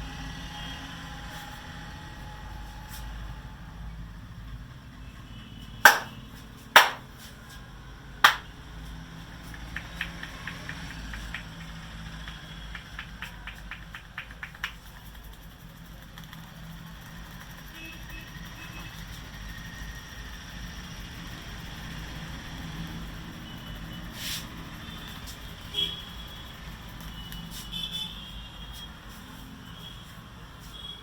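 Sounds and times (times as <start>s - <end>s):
light quick hand taps: 5.9s - 6.2s, 6.8s - 7.1s, 8.3s - 8.5s, 9.4s - 15.3s.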